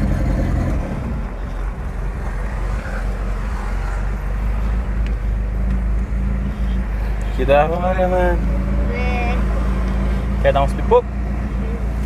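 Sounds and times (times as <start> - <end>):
car engine running low: 0.0 - 12.0.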